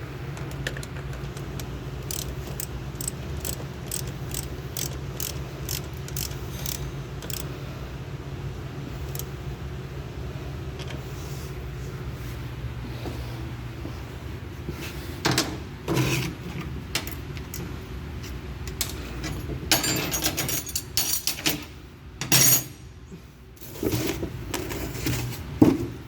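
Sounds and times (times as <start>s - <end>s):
metal tools clinking and clanking: 18.7s - 22.8s.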